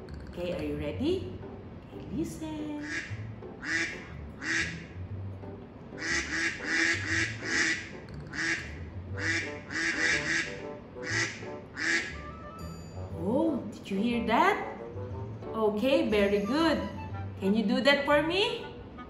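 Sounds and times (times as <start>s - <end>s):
duck quacking: 2.8s - 4.9s, 6.0s - 12.4s.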